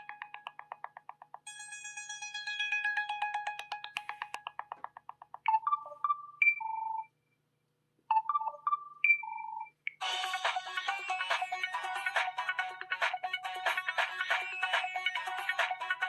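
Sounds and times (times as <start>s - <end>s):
ringtone tune: 0.0s - 0.9s, 1.5s - 4.5s, 5.5s - 7.1s, 8.1s - 16.0s.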